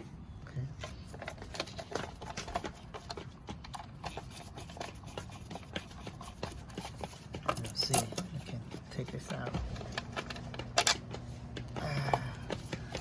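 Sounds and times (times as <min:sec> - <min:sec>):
tools clicking and clattering on metal: 0:06.7 - 0:13.0.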